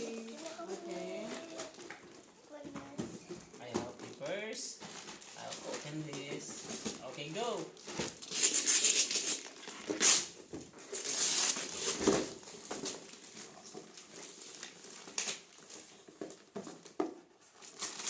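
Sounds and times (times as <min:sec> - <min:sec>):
wrapping paper tearing: 0:07.8 - 0:12.2, 0:13.1 - 0:15.8, 0:17.6 - 0:18.0.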